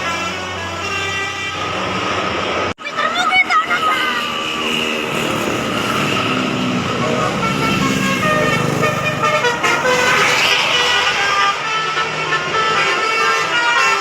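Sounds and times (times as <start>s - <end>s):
heavy bus engine passing: 0.0s - 14.0s
highway traffic: 0.0s - 14.0s
multi-tone bus horn melody: 0.0s - 14.0s.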